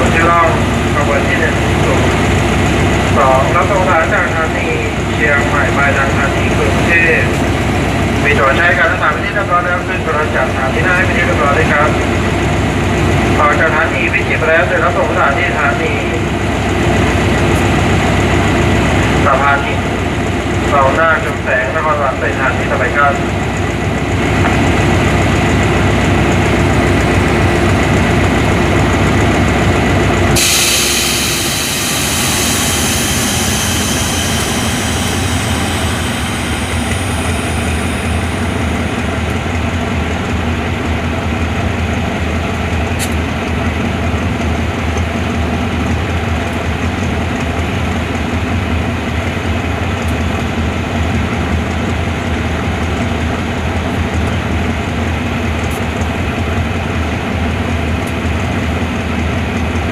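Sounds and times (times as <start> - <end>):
diesel locomotive engine running: 0.0 - 59.9
air brakes hissing: 30.3 - 39.1.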